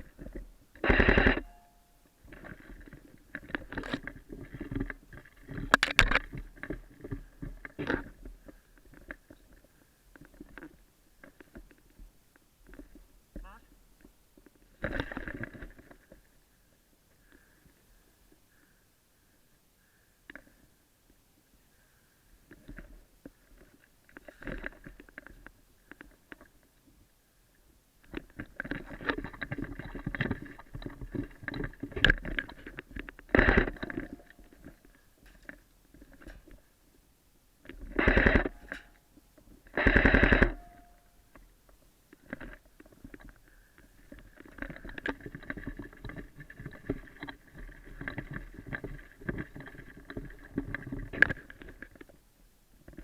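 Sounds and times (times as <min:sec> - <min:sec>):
rustling movement: 0:28.1 - 0:37.0.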